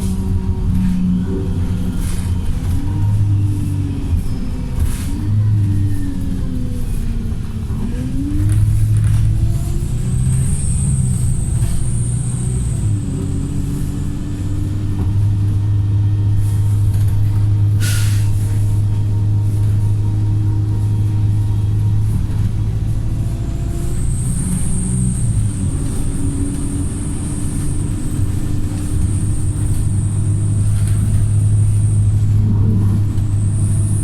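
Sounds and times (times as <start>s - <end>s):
bus engine running: 0.0s - 34.0s
air brake hiss: 17.8s - 18.6s.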